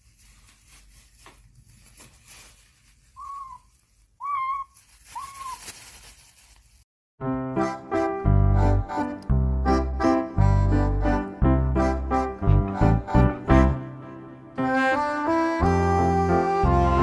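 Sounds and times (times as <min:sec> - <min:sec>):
animal calling: 0:03.2 - 0:05.7
music: 0:07.2 - 0:17.0.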